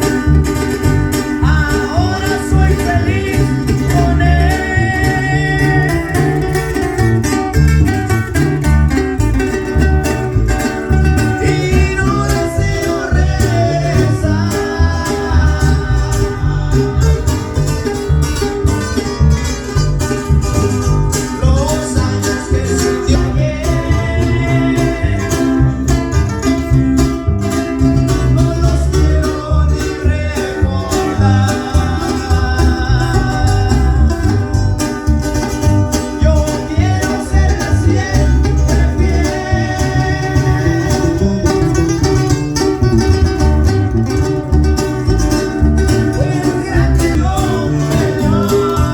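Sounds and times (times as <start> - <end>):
live band playing: 0.0 - 48.9
person singing: 1.2 - 7.0, 10.8 - 20.0, 21.1 - 26.7, 27.6 - 34.8, 35.9 - 42.6, 44.8 - 48.9.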